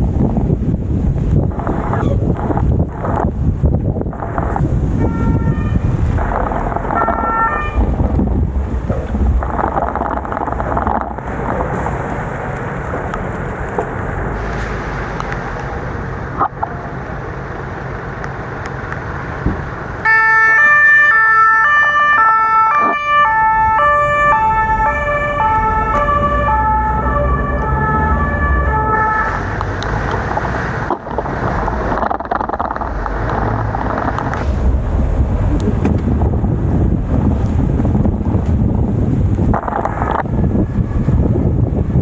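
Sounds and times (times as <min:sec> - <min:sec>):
wind and rain on microphone: 0:00.0 - 0:42.0
two-tone emergency siren: 0:04.1 - 0:08.1, 0:20.0 - 0:29.9.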